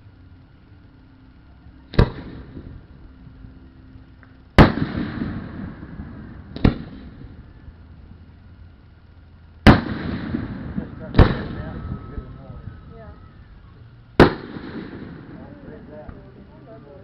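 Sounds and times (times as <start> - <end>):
rumbling tail of explosions: 1.9 - 16.1
firework shells bursting: 4.1 - 7.8, 8.6 - 12.4, 13.4 - 15.8.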